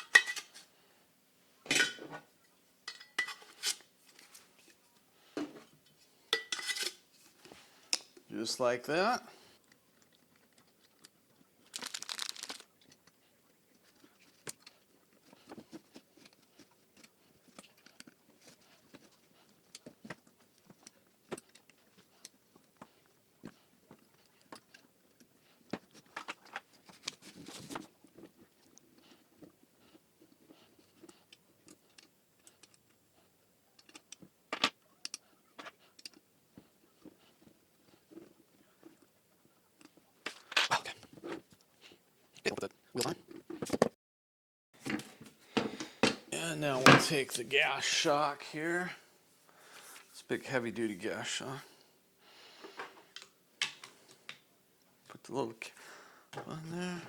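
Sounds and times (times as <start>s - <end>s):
packaging rustling: 11.6s - 12.7s.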